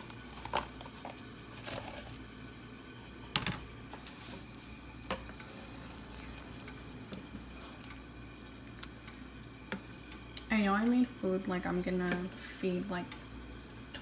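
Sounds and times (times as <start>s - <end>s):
food squishing while stirred: 0.0s - 10.5s.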